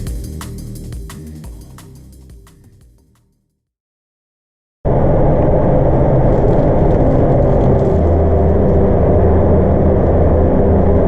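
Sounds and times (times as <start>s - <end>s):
loud machine drone: 4.9s - 11.0s.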